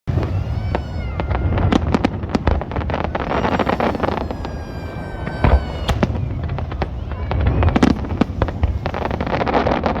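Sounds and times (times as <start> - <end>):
high whistling tones: 0.1 - 9.6
sharp bangs and cracks: 0.1 - 10.0
steady low rumble: 0.1 - 10.0.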